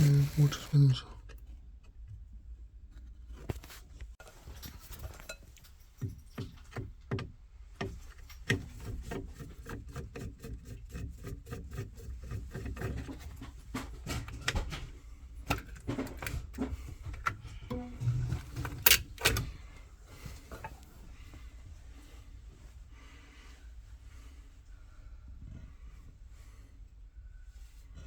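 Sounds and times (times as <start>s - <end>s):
handling knocks and clicks: 12.7s - 19.6s
low steady hum: 15.0s - 28.0s.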